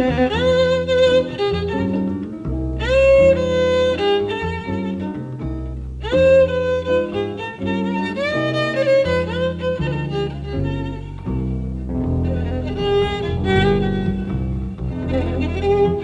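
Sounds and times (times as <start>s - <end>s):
guitar chords: 0.0s - 16.0s
jazz violin melody: 0.0s - 16.0s
walking bass: 0.0s - 16.0s.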